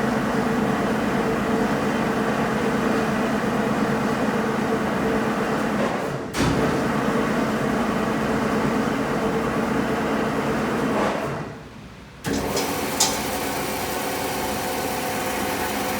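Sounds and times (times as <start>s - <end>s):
power drive mechanical hum: 6.5s - 15.9s.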